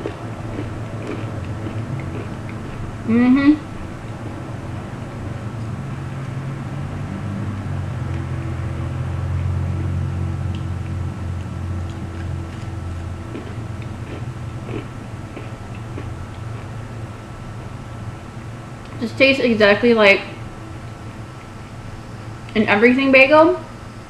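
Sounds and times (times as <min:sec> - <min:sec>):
person chewing crunchy snack: 0:00.0 - 0:02.9, 0:11.8 - 0:16.8
low background hum: 0:00.0 - 0:24.0.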